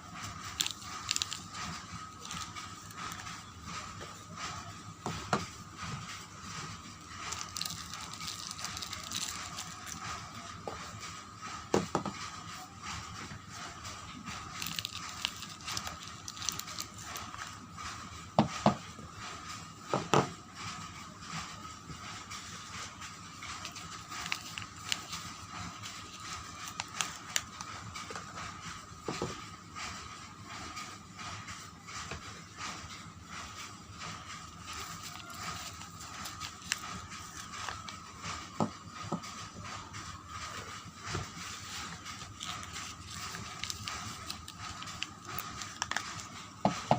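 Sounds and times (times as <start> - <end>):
packaging rustling and crinkling: 0.2 - 4.3, 6.4 - 10.5, 14.1 - 17.6, 23.3 - 28.3, 34.2 - 38.0, 41.1 - 46.3.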